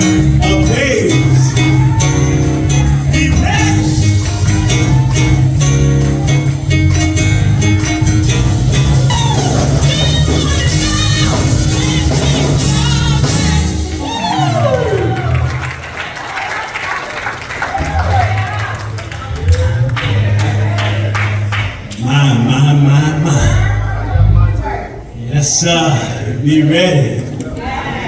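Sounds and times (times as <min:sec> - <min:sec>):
church band music: 0:00.0 - 0:27.5
voices singing: 0:08.8 - 0:15.3.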